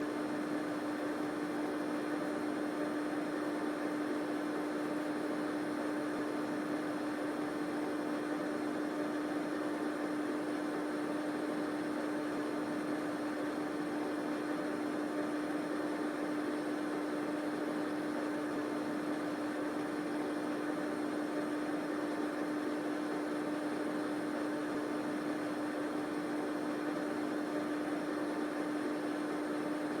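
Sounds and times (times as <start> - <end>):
electric fan running: 0.0 - 30.0.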